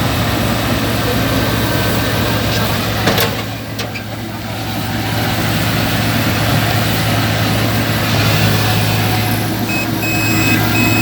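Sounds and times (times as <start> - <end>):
combine harvester running: 0.0 - 11.0
reversing beeper: 8.3 - 11.0.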